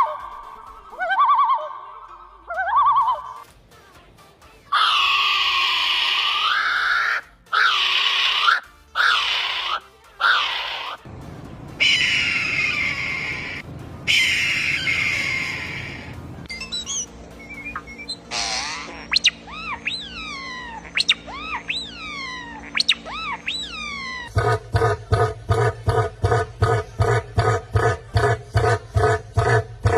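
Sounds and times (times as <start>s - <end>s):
bird screeching: 0.0s - 3.4s, 4.7s - 11.0s, 11.8s - 17.1s, 17.7s - 24.4s.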